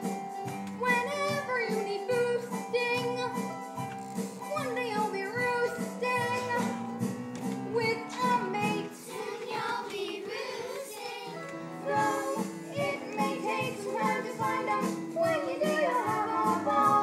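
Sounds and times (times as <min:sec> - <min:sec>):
instrumental accompaniment: 0:00.0 - 0:17.0
cast singing a show tune: 0:07.8 - 0:17.0.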